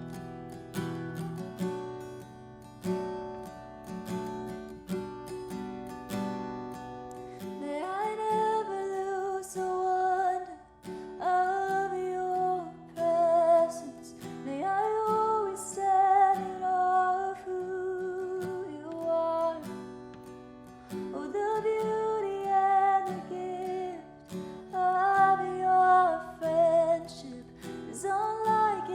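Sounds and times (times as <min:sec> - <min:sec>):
strummed acoustic guitar: 0:00.0 - 0:28.9
woman singing worship song: 0:07.6 - 0:19.8, 0:21.0 - 0:28.9.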